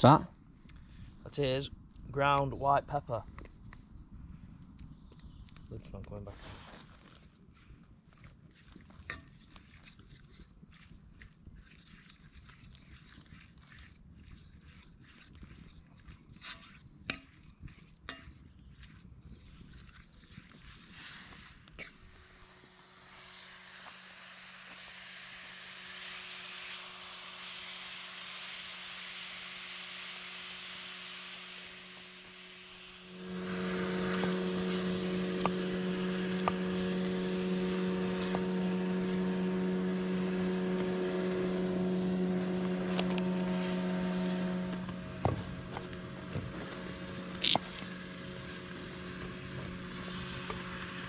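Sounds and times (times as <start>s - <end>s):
steady engine hum: 22.0s - 51.0s
steady hiss: 22.8s - 51.0s.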